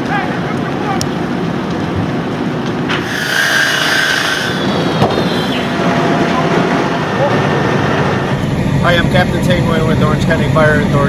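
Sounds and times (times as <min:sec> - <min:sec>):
fire crackling and popping: 0:00.0 - 0:03.4.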